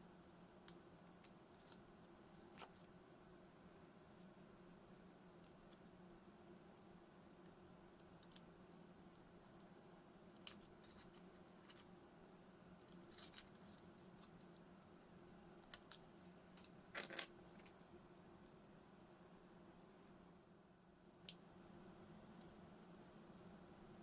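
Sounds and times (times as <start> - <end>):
low steady hum: 0.0 - 24.0
clicks and scrapes of small tools: 12.8 - 14.4, 15.6 - 17.8.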